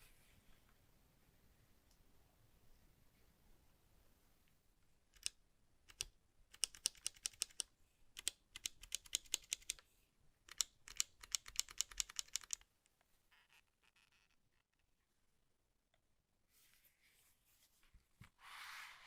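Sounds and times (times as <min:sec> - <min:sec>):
mechanical keyboard typing: 0:05.2 - 0:09.8, 0:10.5 - 0:12.6.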